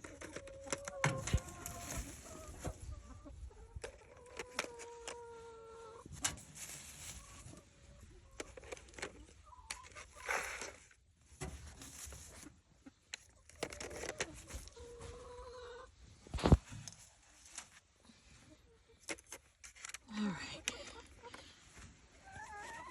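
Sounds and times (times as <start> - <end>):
hens clucking: 0.0 - 10.9, 12.2 - 16.2, 20.6 - 22.9.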